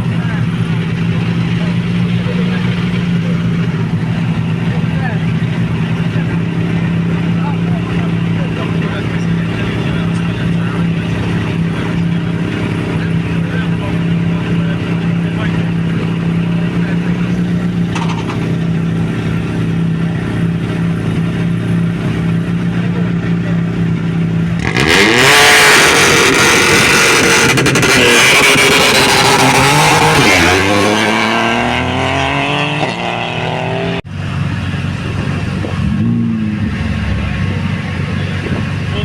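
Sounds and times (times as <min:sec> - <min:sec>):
car engine idling: 0:00.0 - 0:25.2, 0:34.0 - 0:39.0
rally car engine revving: 0:00.0 - 0:39.0.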